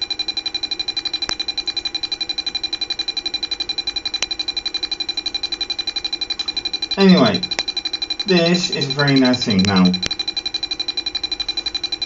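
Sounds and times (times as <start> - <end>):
high tone: 7.0 - 7.6, 8.3 - 10.1
rapid short electronic beeps: 8.3 - 10.2.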